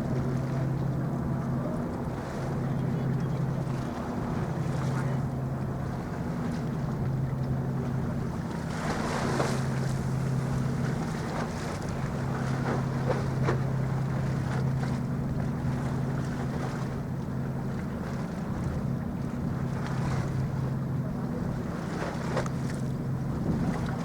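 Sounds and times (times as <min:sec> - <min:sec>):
ship engine droning: 0:00.0 - 0:24.0
wind buffeting microphone: 0:23.0 - 0:24.0.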